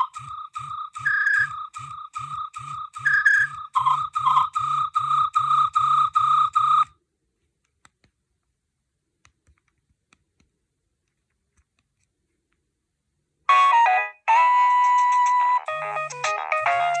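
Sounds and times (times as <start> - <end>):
fast-pulsing phone ringtone: 0.0 - 6.9
polyphonic ringtone melody: 13.5 - 17.0.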